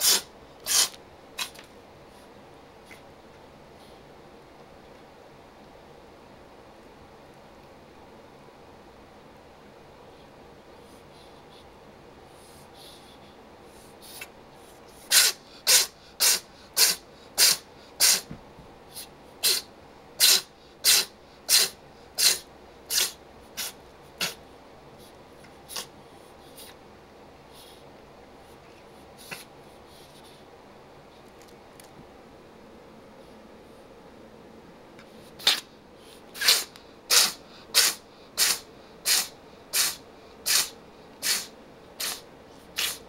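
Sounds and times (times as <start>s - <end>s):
cat sneezing: 0.0s - 1.6s, 15.0s - 24.4s, 25.6s - 25.9s, 35.4s - 35.7s, 36.3s - 43.0s.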